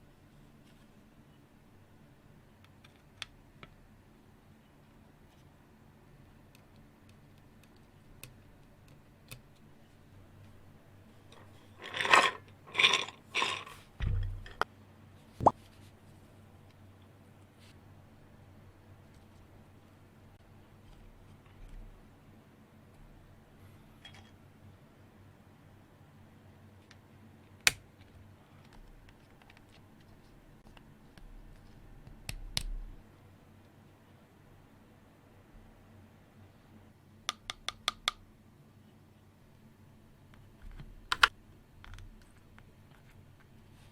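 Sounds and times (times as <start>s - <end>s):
rustling scrapes: 11.4s - 14.0s
low thump: 14.0s - 14.5s
keyboard parts clicking: 41.1s - 41.3s.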